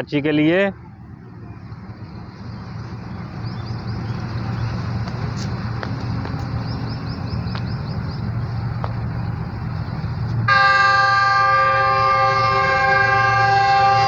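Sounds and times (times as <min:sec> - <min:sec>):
locomotive low rumble: 0:00.0 - 0:14.0
locomotive air horn blast: 0:10.5 - 0:14.0.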